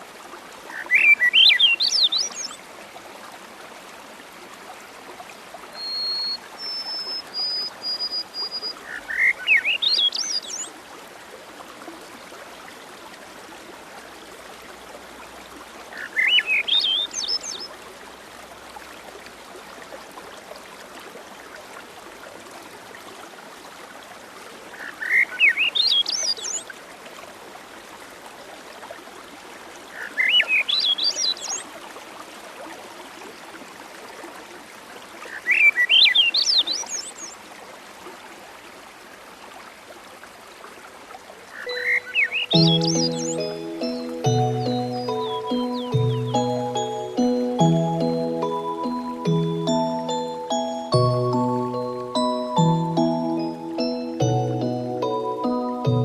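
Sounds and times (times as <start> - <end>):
songbird singing: 0.7 - 2.6, 5.8 - 10.7, 15.9 - 17.7, 41.5 - 56.0
high whistled notes: 41.7 - 56.0.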